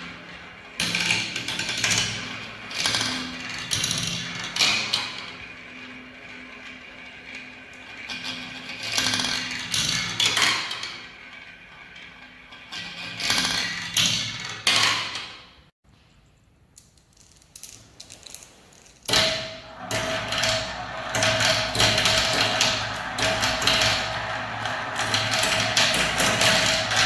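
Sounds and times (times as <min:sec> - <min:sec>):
steady ringing tone: 0:19.3 - 0:27.0
marbles clattering down track: 0:19.6 - 0:27.0.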